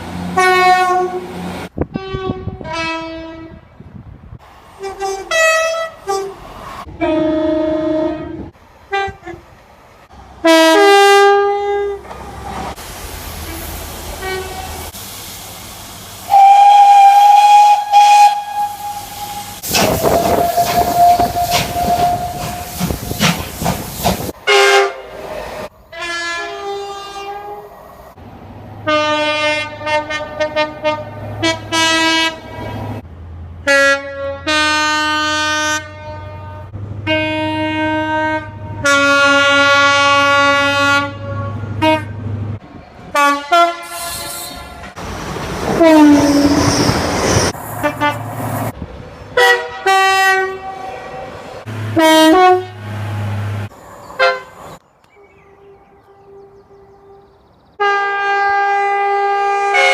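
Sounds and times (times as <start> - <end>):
train horn blasts: 0.4 - 3.7, 4.8 - 9.5, 10.4 - 12.1, 13.4 - 14.9, 16.3 - 22.9, 24.4 - 25.2, 25.9 - 27.7, 28.9 - 32.9, 33.6 - 42.3, 43.1 - 45.0, 45.8 - 47.0, 47.8 - 48.3, 49.4 - 59.9.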